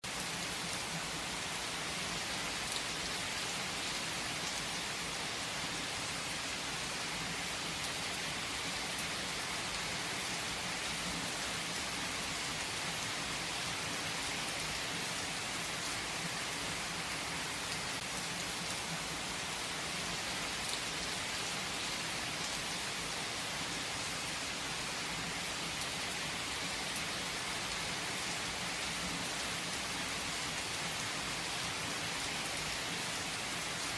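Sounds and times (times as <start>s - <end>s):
steady rain hiss: 0.0s - 33.9s.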